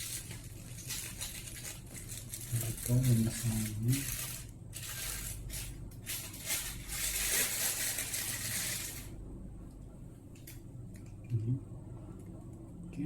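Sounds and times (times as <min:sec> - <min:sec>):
packaging rustling and crinkling: 0:00.0 - 0:09.1.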